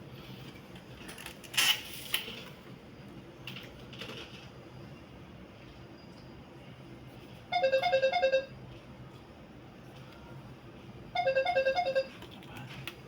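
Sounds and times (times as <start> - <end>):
electronic beeping: 11.2 - 12.1.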